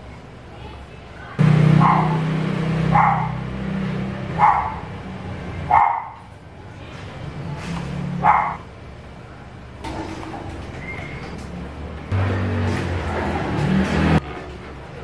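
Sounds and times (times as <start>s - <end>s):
dog barking: 1.8s - 2.3s, 2.9s - 3.4s, 4.4s - 4.9s, 5.7s - 6.3s, 8.2s - 8.6s.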